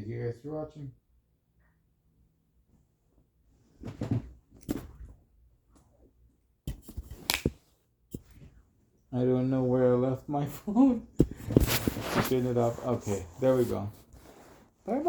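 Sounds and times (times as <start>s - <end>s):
rustling and handling noises: 2.7s - 9.0s, 10.3s - 15.0s.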